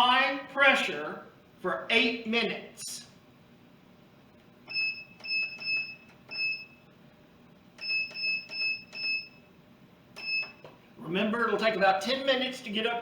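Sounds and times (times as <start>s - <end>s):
short high-pitched beeps: 4.7s - 6.8s, 7.8s - 9.4s, 10.2s - 10.6s.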